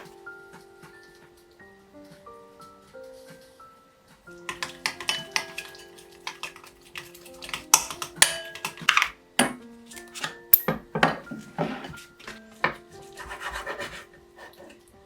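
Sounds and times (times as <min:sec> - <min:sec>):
soft background music: 0:00.0 - 0:15.0
dishes and utensils clattering: 0:04.4 - 0:14.8.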